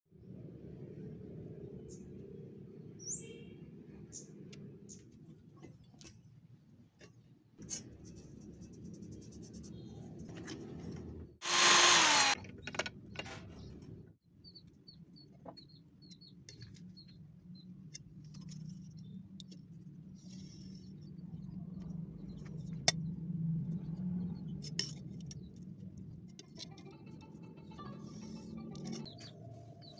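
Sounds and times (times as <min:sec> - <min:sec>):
power tool running: 0:11.4 - 0:12.4.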